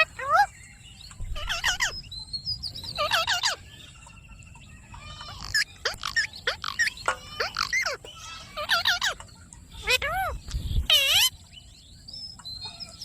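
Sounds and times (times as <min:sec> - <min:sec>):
parakeet chattering: 0:00.0 - 0:00.5, 0:01.4 - 0:01.9, 0:03.0 - 0:03.6, 0:05.0 - 0:09.2, 0:09.8 - 0:11.3.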